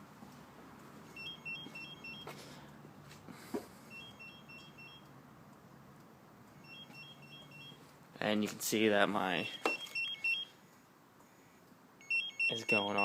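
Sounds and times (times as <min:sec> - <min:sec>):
motorcycle alarm beeping: 0:01.1 - 0:02.3, 0:03.9 - 0:05.1, 0:06.6 - 0:07.8, 0:09.4 - 0:10.6, 0:12.0 - 0:13.0.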